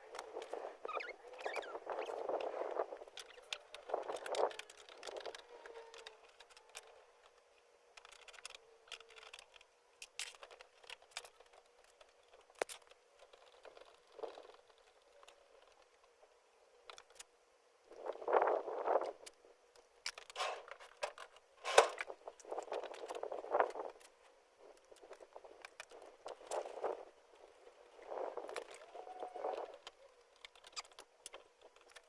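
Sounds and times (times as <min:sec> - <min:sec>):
faint squeak: 0:00.8 - 0:02.4, 0:03.2 - 0:07.0.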